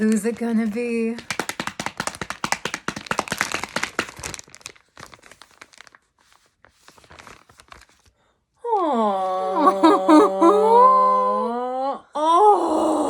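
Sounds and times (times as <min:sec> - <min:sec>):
packaging torn and crinkled: 0:00.0 - 0:08.2.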